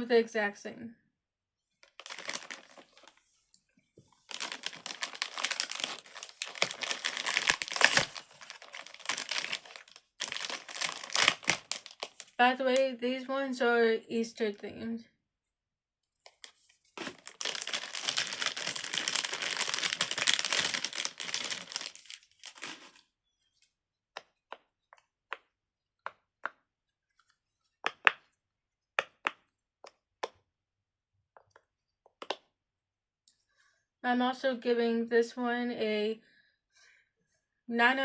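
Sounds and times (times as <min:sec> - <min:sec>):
plastic packaging crinkling: 0:01.8 - 0:03.3, 0:04.1 - 0:12.4, 0:16.3 - 0:23.1.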